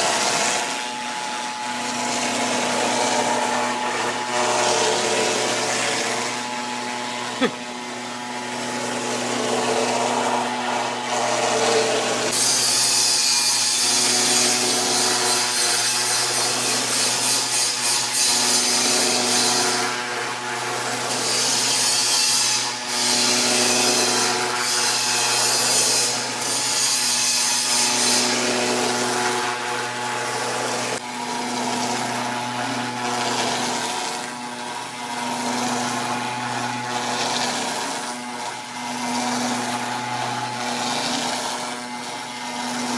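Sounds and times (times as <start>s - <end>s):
router spindle hum: 0.0s - 42.9s.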